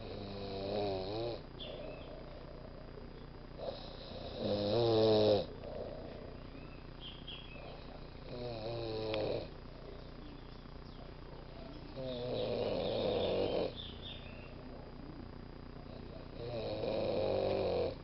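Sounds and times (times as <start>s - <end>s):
person snoring: 0.0s - 2.8s, 3.6s - 6.4s, 7.8s - 9.5s, 11.9s - 13.8s, 15.9s - 18.0s.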